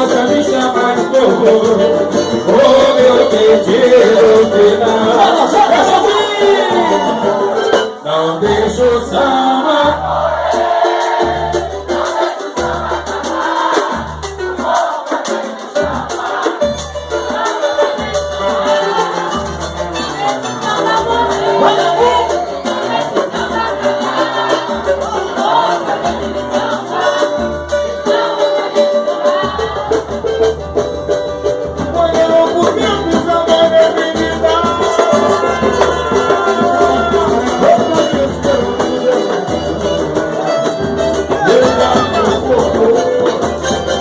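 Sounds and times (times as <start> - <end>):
jingling hand percussion: 0.0 - 44.0
people singing: 0.0 - 44.0
samba band playing: 0.0 - 44.0
low drum beat: 29.4 - 44.0.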